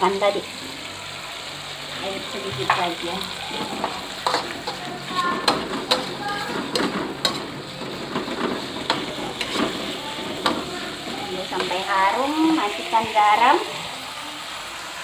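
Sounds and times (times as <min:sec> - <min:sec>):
spice paste sizzling in oil: 0:00.0 - 0:15.0
utensil scraping a pan: 0:03.6 - 0:12.6.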